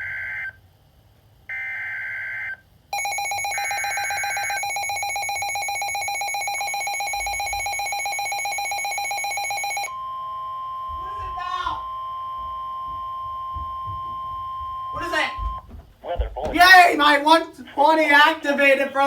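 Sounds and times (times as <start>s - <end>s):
rapidly pulsing alarm beep: 3.0s - 15.7s.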